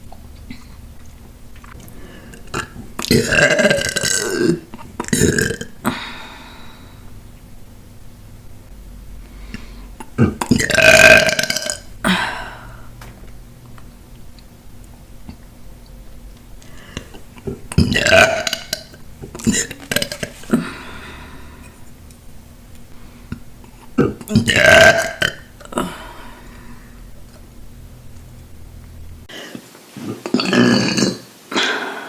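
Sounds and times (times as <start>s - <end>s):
woman burping loudly: 2.0s - 6.8s, 10.0s - 13.0s, 16.8s - 21.7s, 23.8s - 27.0s, 30.2s - 31.9s.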